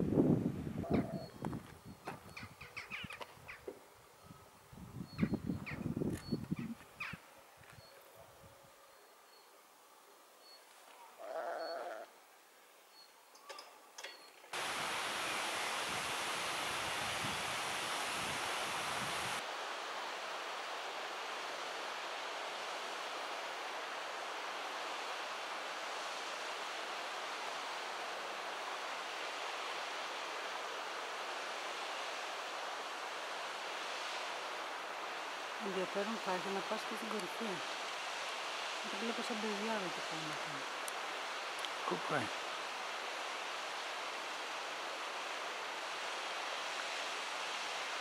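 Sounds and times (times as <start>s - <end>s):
livestock bleating: 11.2s - 12.1s
waterfall rushing: 14.6s - 48.0s.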